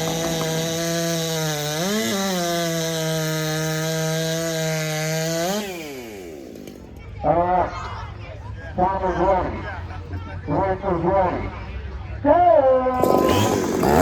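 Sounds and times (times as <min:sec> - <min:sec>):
chainsaw cutting at full throttle: 0:00.0 - 0:06.9, 0:13.0 - 0:14.0.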